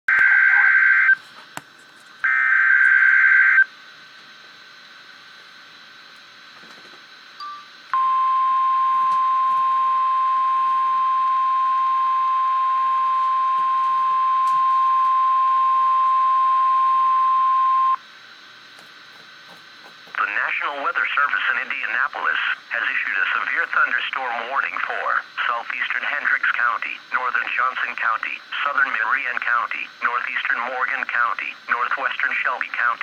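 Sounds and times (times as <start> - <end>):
radio static hiss: 0.1 - 7.4, 9.6 - 33.0
steady alarm tone: 7.6 - 18.1.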